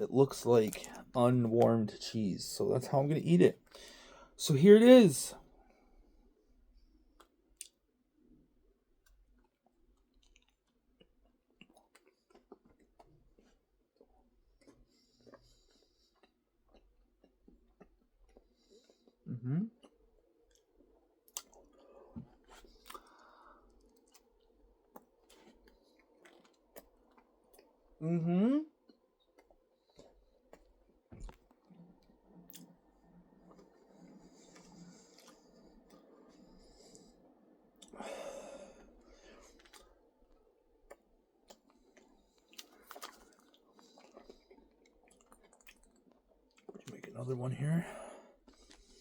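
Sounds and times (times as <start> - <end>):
person chewing: 9.0 - 27.9, 28.8 - 38.0, 38.8 - 47.1, 48.4 - 49.0.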